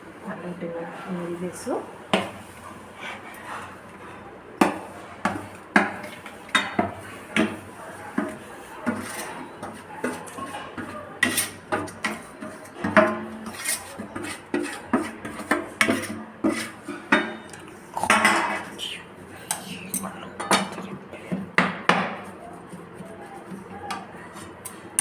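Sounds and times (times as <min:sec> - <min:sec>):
spoon scraping pan: 0:02.2 - 0:18.8.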